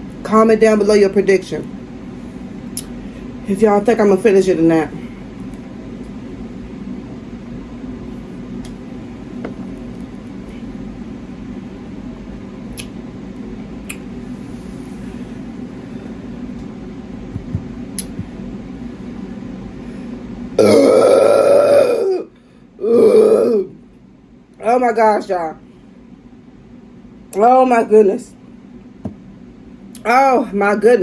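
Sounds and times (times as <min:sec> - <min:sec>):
kitchen fan humming: 0:00.0 - 0:31.0
loud drawn-out burp: 0:20.6 - 0:23.7.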